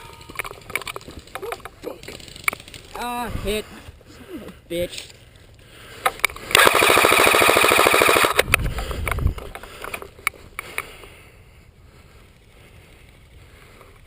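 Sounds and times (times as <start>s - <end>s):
sharp clicks: 6.0s - 11.1s
airsoft rifle full-auto burst: 6.5s - 8.5s.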